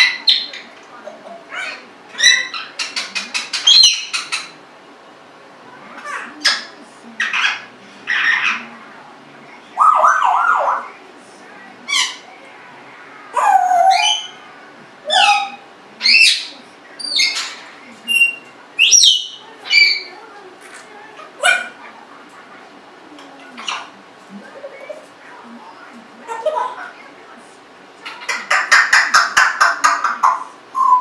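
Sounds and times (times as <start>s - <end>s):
parrot whistling and squawking: 9.8s - 10.9s, 13.3s - 14.4s, 15.1s - 20.1s, 28.0s - 31.0s.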